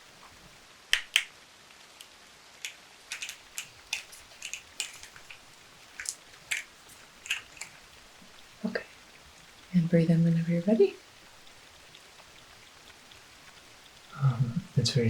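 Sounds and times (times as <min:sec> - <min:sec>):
faint steady hiss: 0:00.0 - 0:15.0
small bottles clicking: 0:00.9 - 0:01.3, 0:02.0 - 0:08.4.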